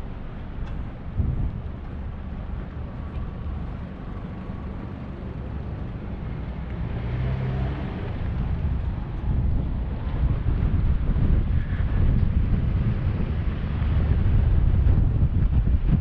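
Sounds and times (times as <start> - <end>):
low traffic rumble: 0.0 - 16.0
motor vehicle passing: 6.2 - 15.2.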